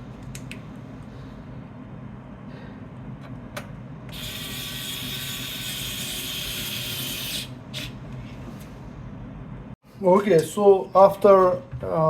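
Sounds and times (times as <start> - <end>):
electric screwdriver running: 4.1 - 6.1.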